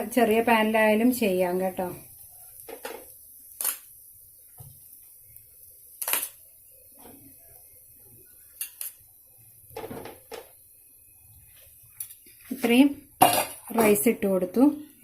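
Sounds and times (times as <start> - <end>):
spoon knocking and scraping pan: 2.6 - 3.1, 9.7 - 10.6.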